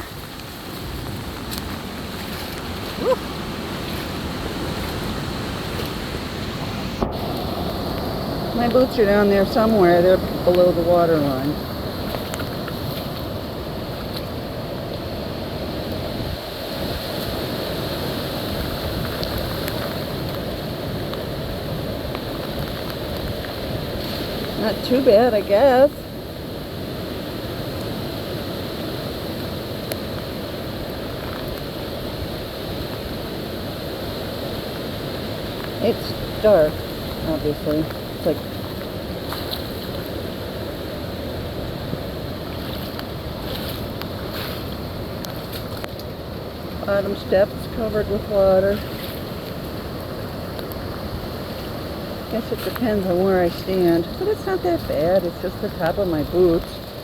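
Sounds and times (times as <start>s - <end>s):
wind and rain rushing: 0.0s - 57.0s.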